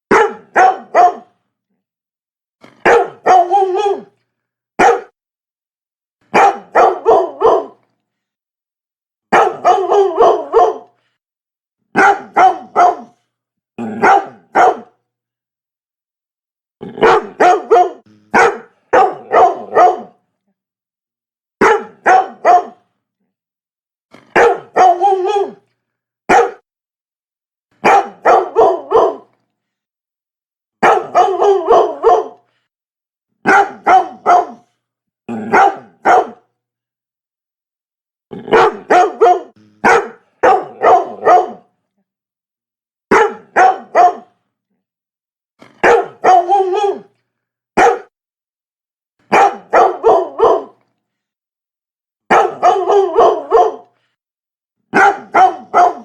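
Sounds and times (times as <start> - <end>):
dog barking: 0.1 - 1.4, 2.6 - 4.1, 4.8 - 5.2, 6.3 - 7.8, 9.3 - 11.0, 11.9 - 13.2, 13.9 - 15.0, 17.0 - 20.2, 21.6 - 22.9, 24.2 - 25.6, 26.3 - 26.6, 27.8 - 29.3, 30.8 - 32.5, 33.4 - 34.7, 35.3 - 36.5, 38.4 - 41.7, 43.1 - 44.4, 45.6 - 47.1, 47.8 - 48.2, 49.3 - 50.8, 52.3 - 54.0, 54.9 - 56.0.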